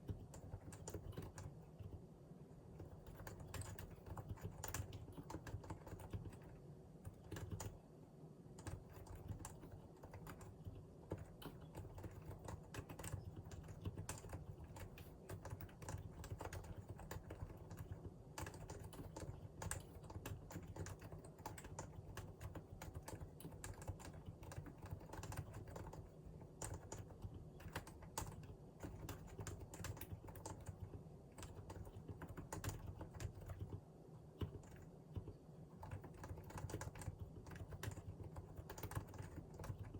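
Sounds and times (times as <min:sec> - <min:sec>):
keyboard typing: 0:00.0 - 0:02.0, 0:02.8 - 0:07.8, 0:08.6 - 0:33.8, 0:34.4 - 0:39.9.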